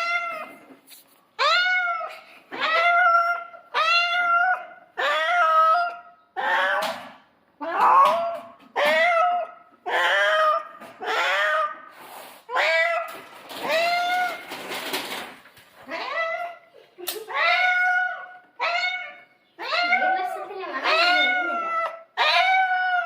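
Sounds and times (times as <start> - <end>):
cat meowing: 17.3 - 23.0.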